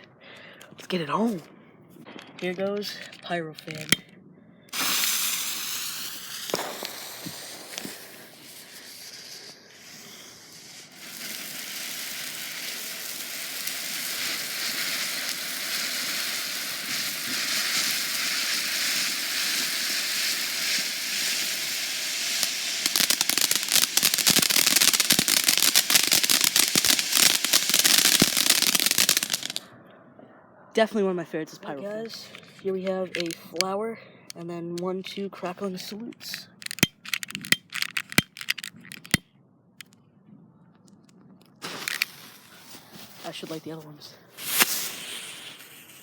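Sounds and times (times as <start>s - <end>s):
firework fountain hissing: 4.7s - 29.6s, 41.6s - 46.0s
firework crackling: 4.7s - 29.7s, 31.7s - 33.6s, 35.6s - 39.2s, 41.6s - 46.0s.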